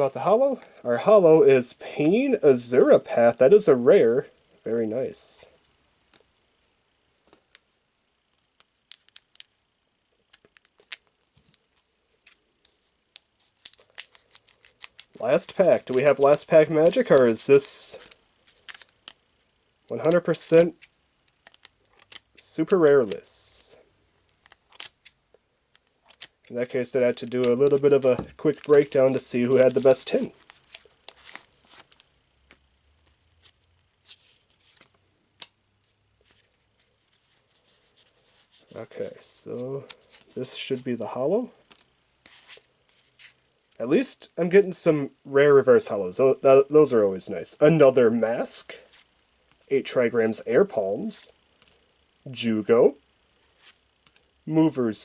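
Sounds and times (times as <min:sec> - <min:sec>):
cards clicking and rustling: 0:08.4 - 0:09.6, 0:10.3 - 0:19.2, 0:19.8 - 0:23.3, 0:24.2 - 0:35.5
foil pack crinkling: 0:13.1 - 0:19.2, 0:19.9 - 0:23.4, 0:24.2 - 0:32.2.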